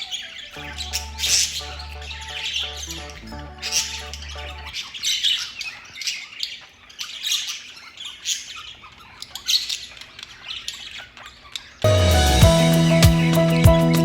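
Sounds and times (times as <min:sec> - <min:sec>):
budgerigars squawking and chirping: 0:00.0 - 0:12.9
background music with bass line: 0:00.6 - 0:04.7, 0:11.9 - 0:14.0.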